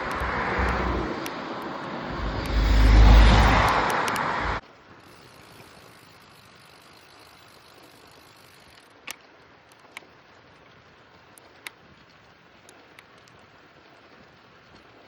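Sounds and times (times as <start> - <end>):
loud rushing noise: 0.0 - 4.6
short sharp clicks: 0.0 - 4.6.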